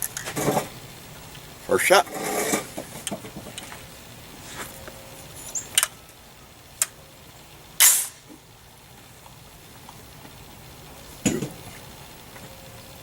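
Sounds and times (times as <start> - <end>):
pistol gunshot: 7.8 - 8.2.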